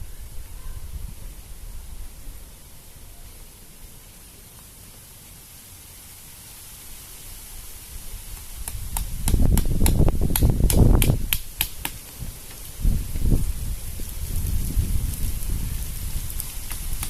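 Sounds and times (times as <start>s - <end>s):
wind gusting across microphone: 0.0s - 4.2s, 7.1s - 17.0s
quick sharp ticks: 8.4s - 12.0s.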